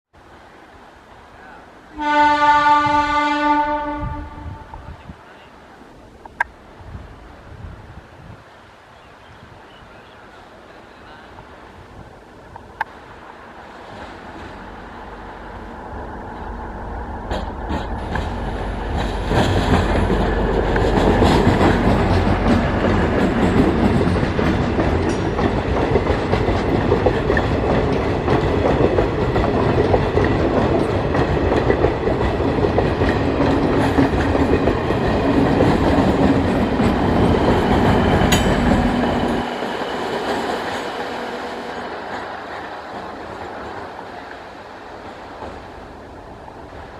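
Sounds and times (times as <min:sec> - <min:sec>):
train passing rumble: 0:00.2 - 0:46.9
wheels clattering over rails: 0:17.1 - 0:44.4.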